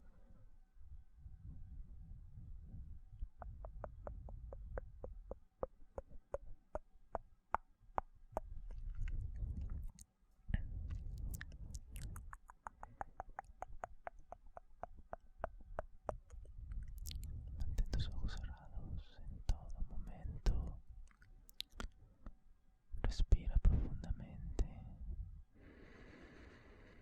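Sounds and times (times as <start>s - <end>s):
wet tongue clicks: 3.4s - 10.0s, 10.6s - 18.1s, 20.4s - 22.0s
lip smacks: 3.4s - 18.1s, 21.0s - 22.0s.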